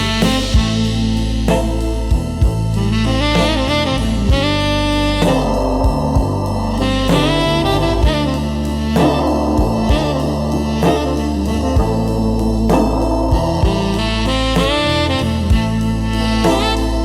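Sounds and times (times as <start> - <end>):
bass line: 0.0 - 17.0
saxophone lead: 0.0 - 17.0
drum beat: 5.2 - 15.8.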